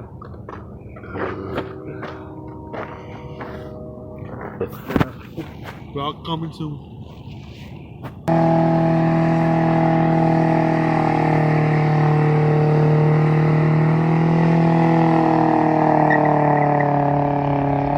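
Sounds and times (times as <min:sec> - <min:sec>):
engine at high revs: 0:00.9 - 0:04.6, 0:08.3 - 0:17.9.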